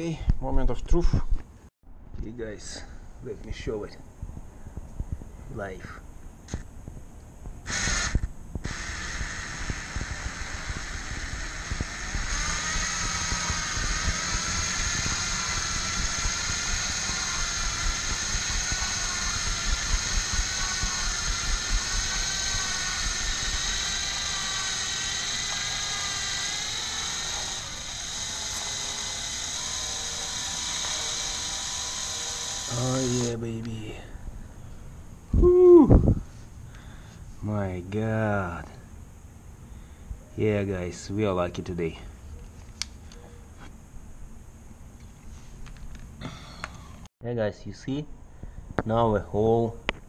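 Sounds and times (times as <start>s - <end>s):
electric drill whining under load: 7.7s - 33.4s.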